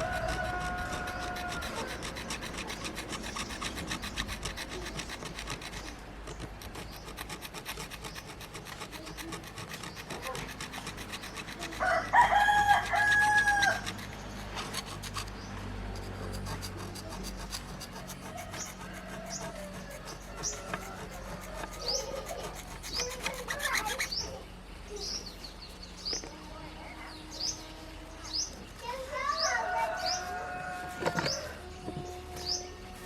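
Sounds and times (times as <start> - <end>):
rooster crowing: 0.0 - 2.3, 11.8 - 14.0, 18.0 - 22.2, 29.5 - 31.8
rapid hand scraping: 0.0 - 24.5.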